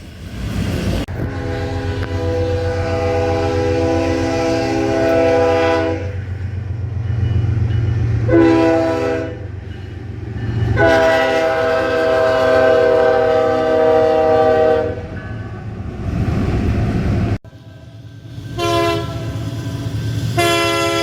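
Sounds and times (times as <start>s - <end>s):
train horn blasts: 1.1s - 6.3s, 8.3s - 9.5s, 10.6s - 15.2s, 18.6s - 19.4s, 20.4s - 21.0s.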